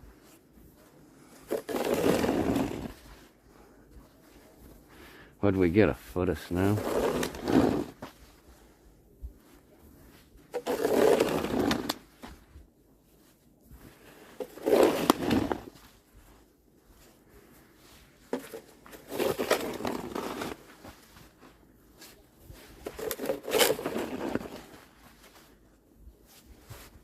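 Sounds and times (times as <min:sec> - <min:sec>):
snow shovel scraping snow: 0:01.0 - 0:03.4, 0:06.3 - 0:08.5, 0:10.5 - 0:12.4, 0:13.8 - 0:16.0, 0:17.4 - 0:21.4, 0:22.0 - 0:27.0.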